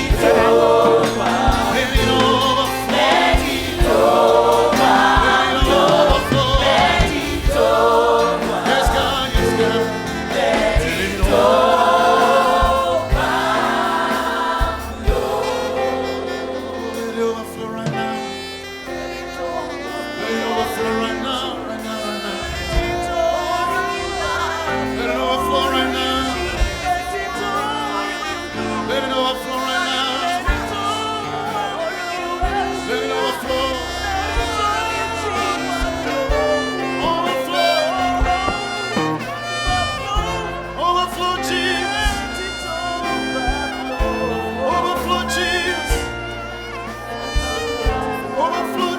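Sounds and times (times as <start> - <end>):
band playing melodic lead line: 0.0 - 48.9
gospel choir singing: 0.0 - 48.9.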